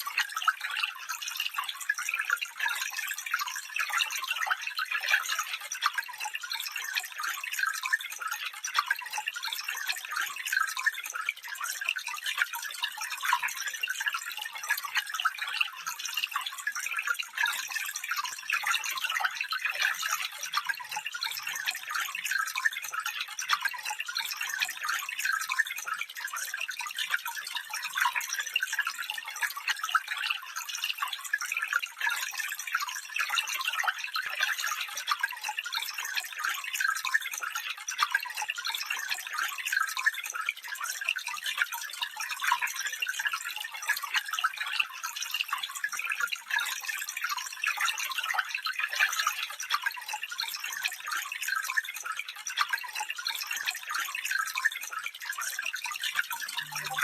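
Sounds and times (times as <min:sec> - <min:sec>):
small stream trickling: 0:00.0 - 0:57.0.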